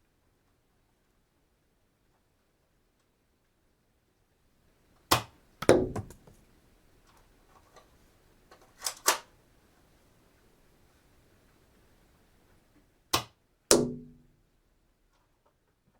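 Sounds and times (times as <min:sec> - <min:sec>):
dart gun shot with thump: 0:05.1 - 0:06.2, 0:13.2 - 0:14.2.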